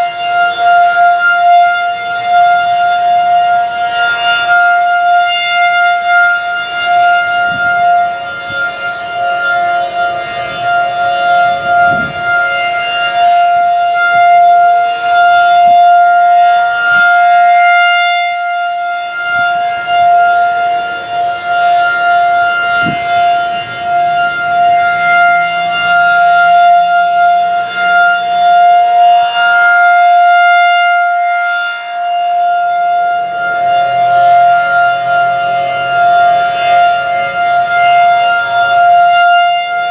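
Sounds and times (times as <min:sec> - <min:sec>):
rotating warning siren steady tone: 0:00.0 - 0:39.9.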